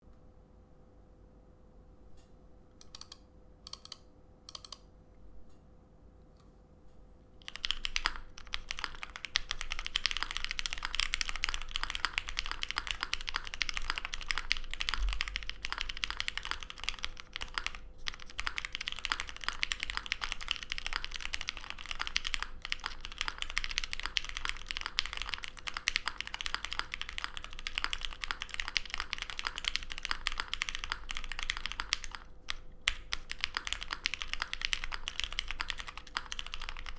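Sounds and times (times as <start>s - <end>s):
typing on mechanical keyboard: 7.4s - 36.9s.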